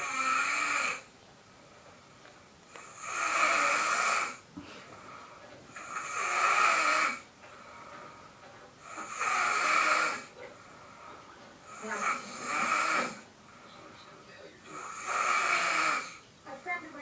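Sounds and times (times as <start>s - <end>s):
person snoring: 0.0s - 1.1s, 2.8s - 4.4s, 5.7s - 7.2s, 8.8s - 10.4s, 11.7s - 13.2s, 14.7s - 16.2s.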